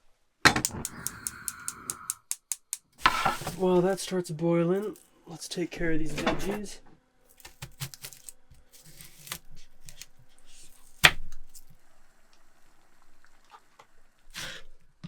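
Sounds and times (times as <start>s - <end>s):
vegetables rustling and clicking: 7.3s - 11.7s.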